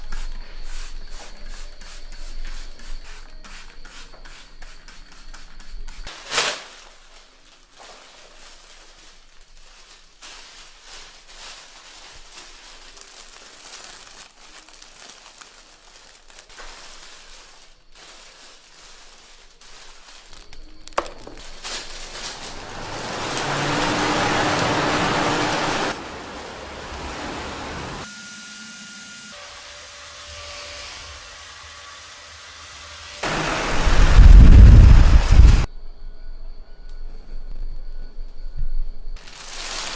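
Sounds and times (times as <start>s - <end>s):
fan rushing with low hum: 21.8s - 28.1s, 33.2s - 35.7s.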